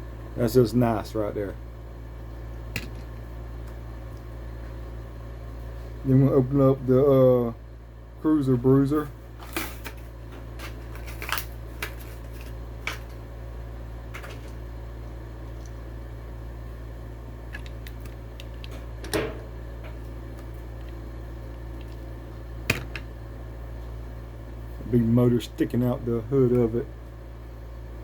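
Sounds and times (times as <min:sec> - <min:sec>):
low hum: 0:00.0 - 0:28.0
plastic packaging crackling: 0:10.7 - 0:13.1.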